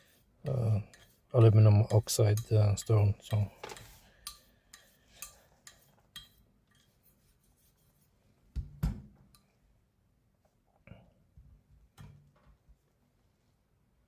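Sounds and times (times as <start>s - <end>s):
faint razor scraping: 0.0s - 8.1s.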